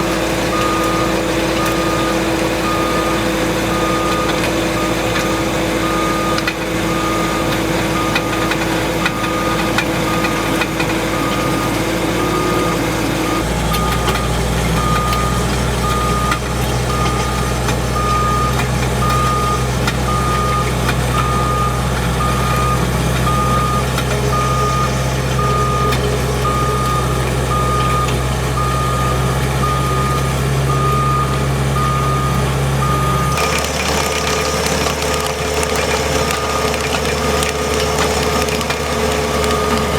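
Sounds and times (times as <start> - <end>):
backup alarm beeping: 0.0 - 39.9
skid steer engine under load: 0.0 - 39.9.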